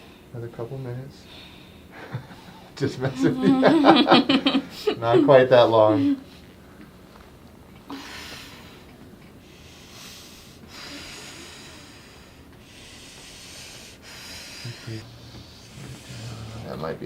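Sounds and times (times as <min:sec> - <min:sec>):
person breathing in and out: 0:07.9 - 0:16.7.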